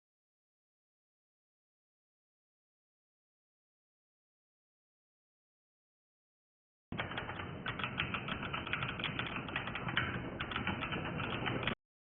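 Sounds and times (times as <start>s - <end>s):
mechanical keyboard typing: 7.0s - 11.8s.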